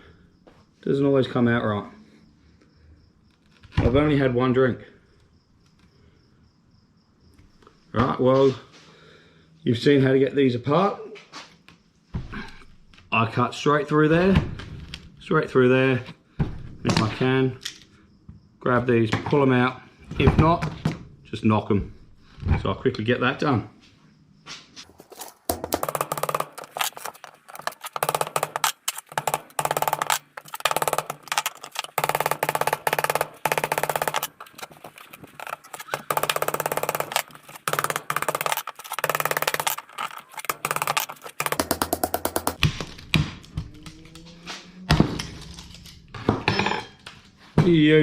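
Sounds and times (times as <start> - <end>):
rapid hammer tapping: 25.5 - 42.7.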